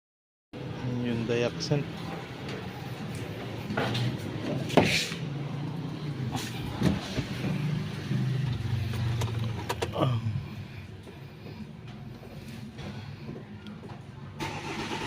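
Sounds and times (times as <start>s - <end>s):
starter motor cranking engine: 8.4s - 10.1s, 14.4s - 15.0s.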